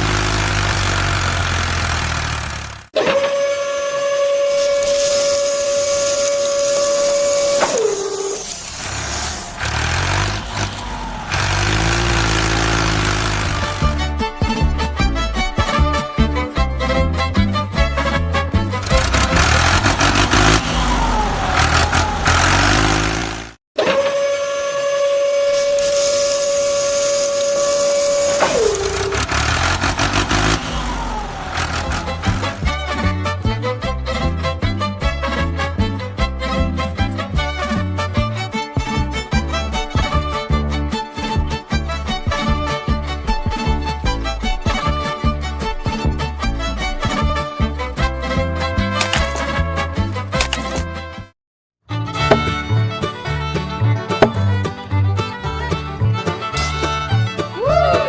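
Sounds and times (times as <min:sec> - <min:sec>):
low engine rumble: 0:00.0 - 0:02.9, 0:04.8 - 0:23.6, 0:25.9 - 0:48.8
small motor whining: 0:00.0 - 0:14.0, 0:18.8 - 0:33.2
horn-like blast: 0:03.0 - 0:09.9, 0:18.0 - 0:33.8.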